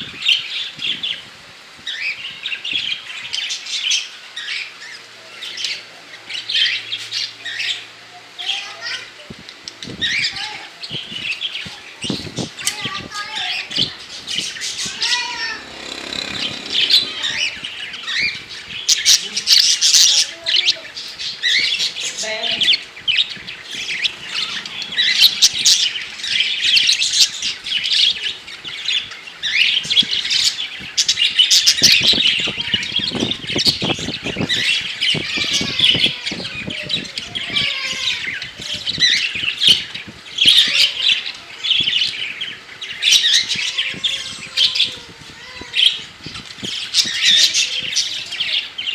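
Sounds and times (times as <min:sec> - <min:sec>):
parakeets chattering and squawking: 0:01.8 - 0:48.9
rapid knocks or rattles: 0:14.7 - 0:17.6.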